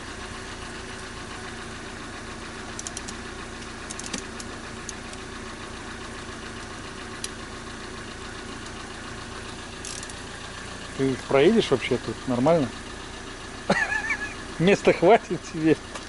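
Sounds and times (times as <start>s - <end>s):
car engine idling: 0.0s - 16.0s
light clicks: 2.7s - 5.2s.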